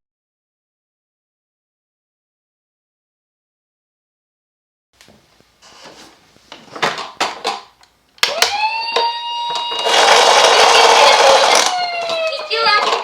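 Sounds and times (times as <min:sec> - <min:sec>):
plastic toy cars clicking: 0:06.8 - 0:13.0
toy ambulance electronic siren: 0:08.2 - 0:13.0.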